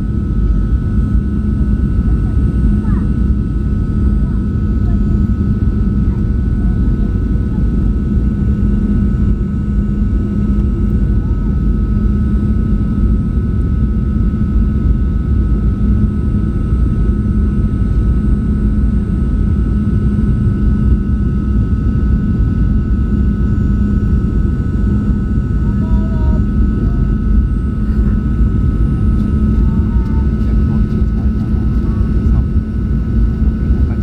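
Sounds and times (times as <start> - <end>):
airliner cabin noise: 0.0 - 13.4, 15.9 - 34.0.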